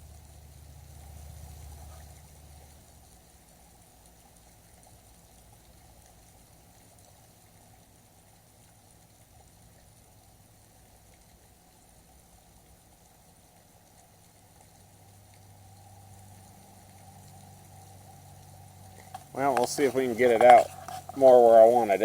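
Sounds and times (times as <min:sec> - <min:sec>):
outdoor background hiss: 0:00.0 - 0:22.0.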